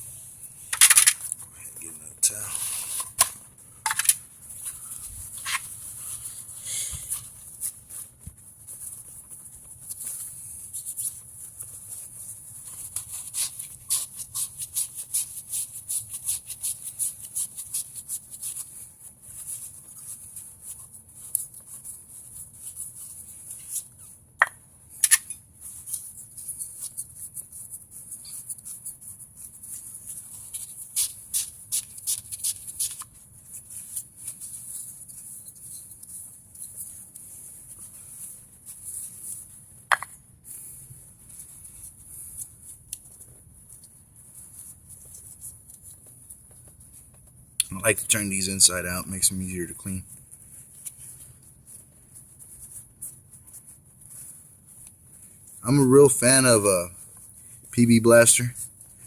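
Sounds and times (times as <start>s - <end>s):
steady high hiss: 47.6s - 50.0s, 57.7s - 58.6s.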